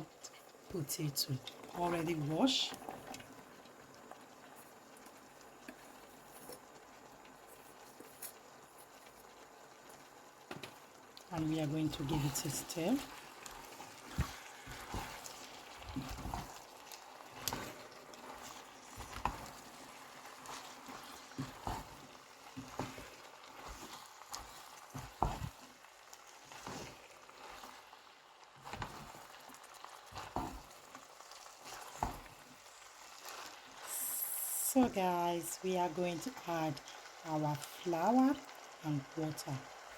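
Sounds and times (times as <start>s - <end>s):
faint sizzle: 0.0s - 39.9s.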